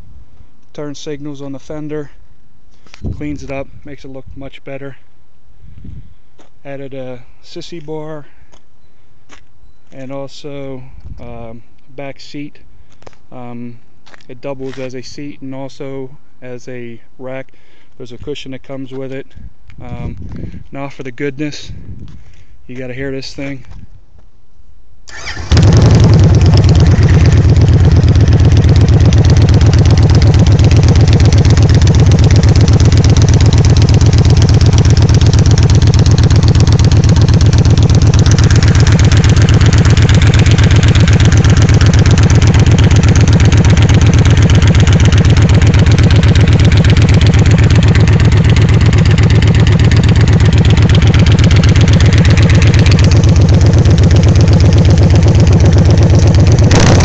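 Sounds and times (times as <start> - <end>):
motorcycle engine running: 25.2 - 57.0.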